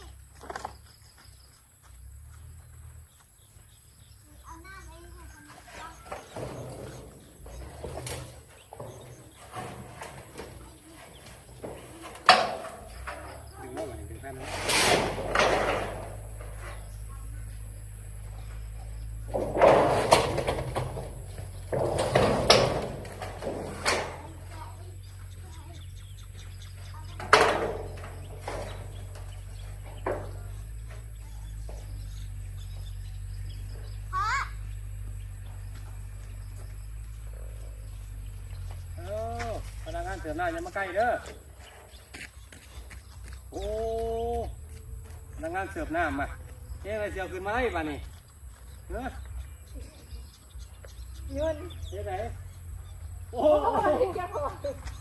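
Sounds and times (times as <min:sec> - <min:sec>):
knocks and clatter: 0:04.4 - 0:43.6
faint bird chirps: 0:24.2 - 0:27.2, 0:28.2 - 0:47.4.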